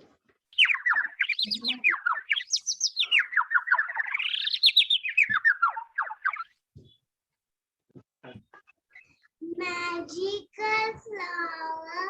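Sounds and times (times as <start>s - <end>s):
bird chirping: 0.5s - 7.1s, 8.3s - 9.4s.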